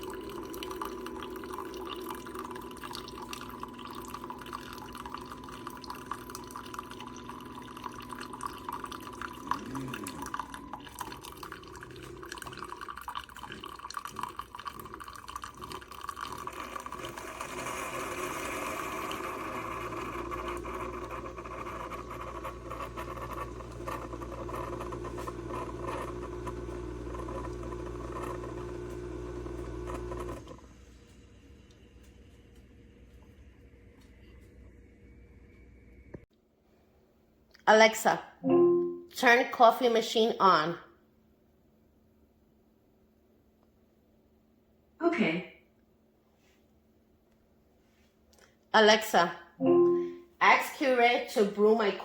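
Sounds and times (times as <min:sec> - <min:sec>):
liquid pouring into a cup: 0:00.0 - 0:30.6
coffee maker pump hum: 0:00.0 - 0:36.2.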